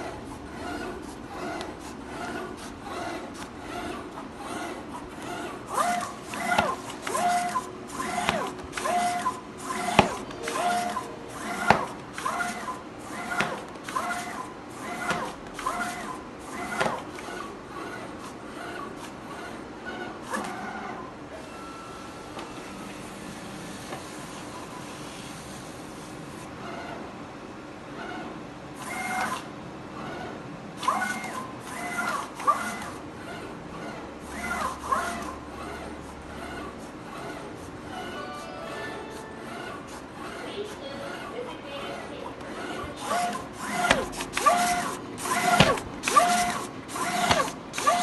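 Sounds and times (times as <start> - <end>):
sharp machine clicks: 0.0 - 19.6, 30.8 - 38.2, 42.5 - 48.0
steady low hum: 0.0 - 20.2
stepper motors whining: 0.0 - 26.2, 39.2 - 48.0.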